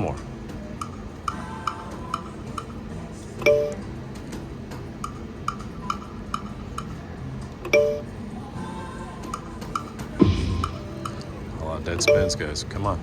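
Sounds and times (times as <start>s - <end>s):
slot machine ticks and chimes: 3.4s - 3.8s, 5.0s - 7.0s, 7.7s - 8.2s, 11.9s - 12.7s
louder electronic tones: 12.0s - 12.5s.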